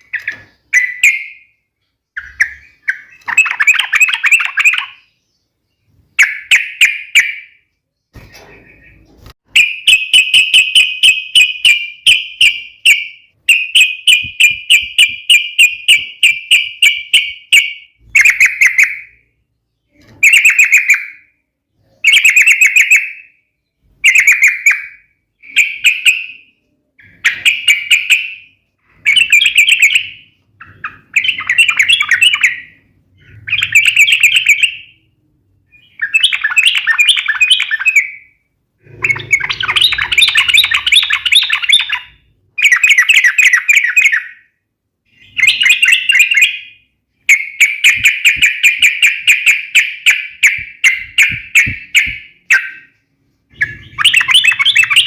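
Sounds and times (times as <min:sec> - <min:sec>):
bulbul rapid chattering song: 0:00.0 - 0:05.1, 0:08.7 - 0:19.3, 0:38.8 - 0:44.4, 0:45.2 - 0:55.0.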